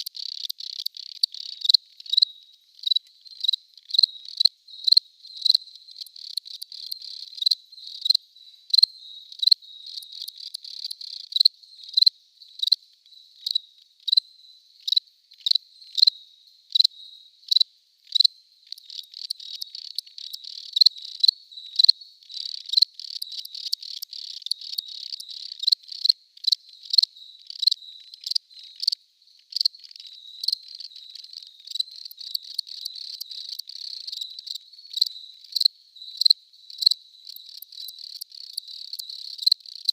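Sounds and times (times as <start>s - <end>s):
continuous trill of crickets: 0.0s - 39.9s
loud high-pitched cricket chirp: 0.0s - 39.9s.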